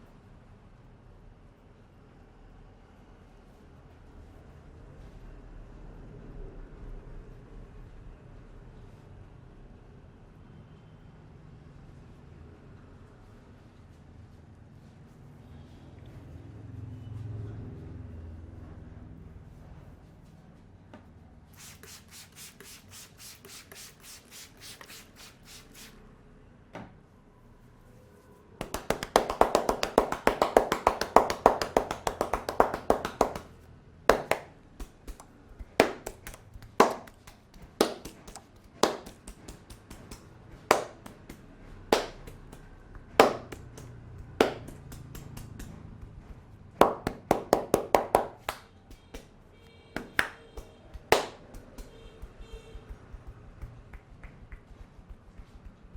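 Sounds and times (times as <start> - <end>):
hands tapping on head: 28.6 - 49.3, 50.0 - 55.9.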